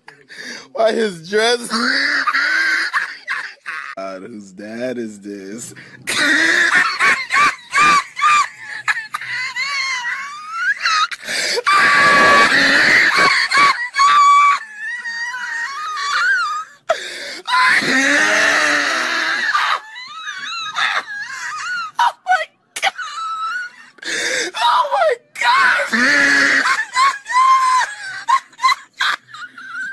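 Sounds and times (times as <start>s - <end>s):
man gasping: 0.1s - 0.8s
man laughing hysterically: 1.4s - 4.0s, 6.0s - 16.7s, 17.4s - 29.9s.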